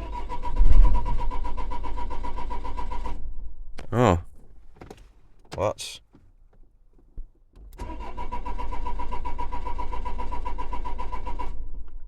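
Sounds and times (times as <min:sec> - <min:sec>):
diesel engine cranking: 0:00.0 - 0:02.9, 0:07.8 - 0:11.4.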